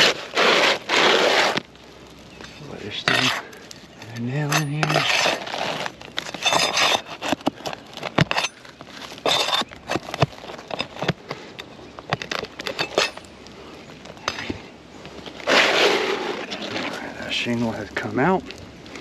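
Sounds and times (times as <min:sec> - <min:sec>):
metal tool scraping under shingles: 0:00.0 - 0:01.6, 0:02.4 - 0:13.4, 0:15.2 - 0:17.0.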